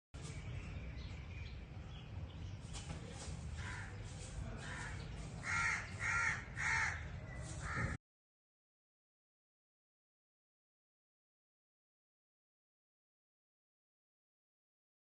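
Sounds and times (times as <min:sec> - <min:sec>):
bird harsh calls: 0:02.5 - 0:08.0.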